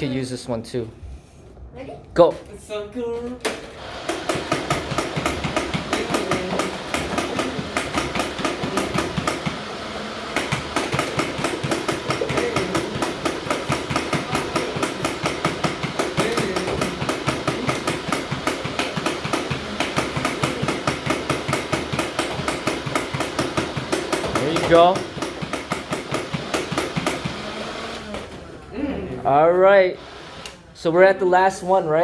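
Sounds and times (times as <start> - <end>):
toy blaster firing rapidly: 4.0 - 27.7.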